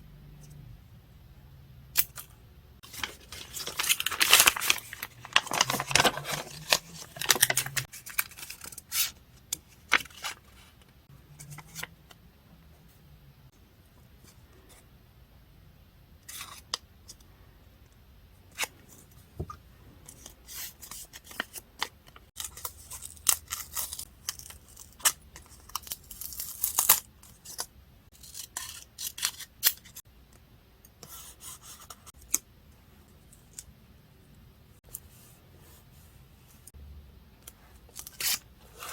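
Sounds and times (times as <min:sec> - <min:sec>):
paper tearing: 0:02.9 - 0:09.0.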